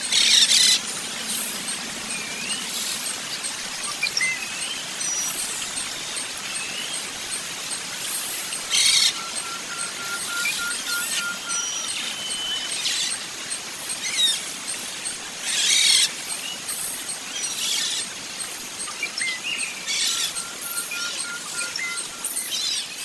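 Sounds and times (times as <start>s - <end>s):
high-pitched bird ticks: 0.0s - 22.8s
birds chirping: 0.0s - 23.0s
steady outdoor hiss: 0.0s - 23.0s.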